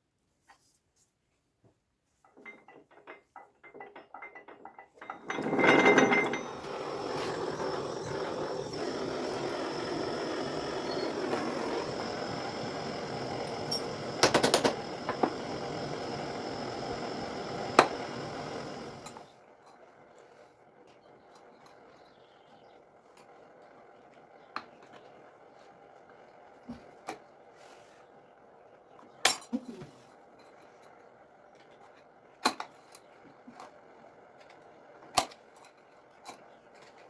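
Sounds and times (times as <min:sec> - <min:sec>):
power tool running: 0:05.2 - 0:19.3.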